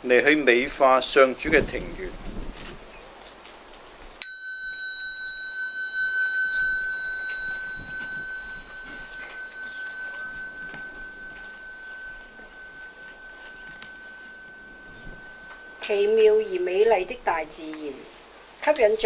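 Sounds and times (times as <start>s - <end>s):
small bell ringing: 4.2s - 16.7s.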